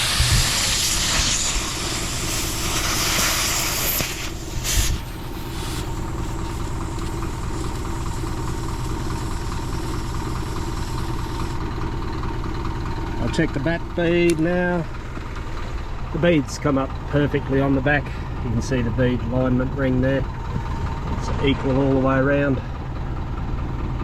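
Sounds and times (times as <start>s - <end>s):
air hissing from tyre valve: 0.0s - 12.2s
truck engine idling: 0.0s - 24.0s.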